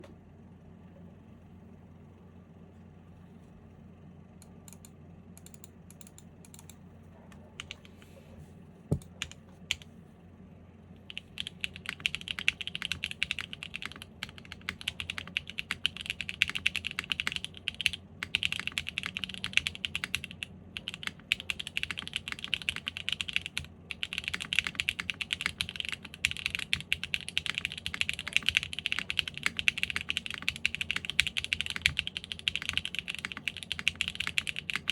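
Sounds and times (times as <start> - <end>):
typing on mechanical keyboard: 7.6 - 7.9, 9.0 - 9.8, 11.1 - 34.9.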